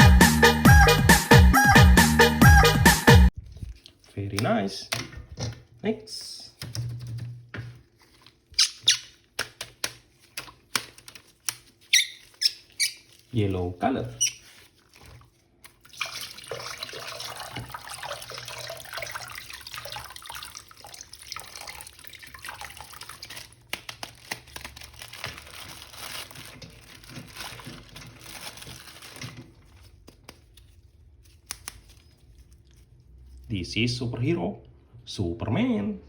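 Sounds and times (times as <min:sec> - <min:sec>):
plastic packaging crinkling: 0:03.4 - 0:04.7, 0:06.9 - 0:16.0, 0:21.1 - 0:33.5.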